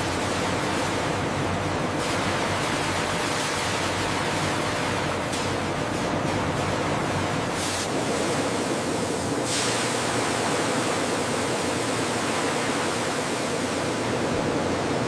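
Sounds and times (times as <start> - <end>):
processing machinery hissing: 7.0 - 15.0.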